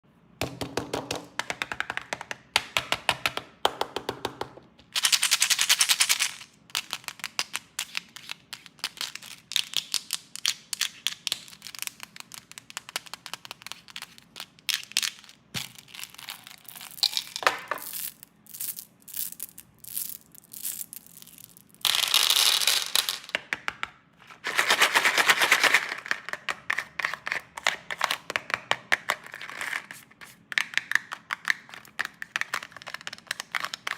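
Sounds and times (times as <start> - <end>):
plastic wrappers crinkling: 13.8 - 18.8.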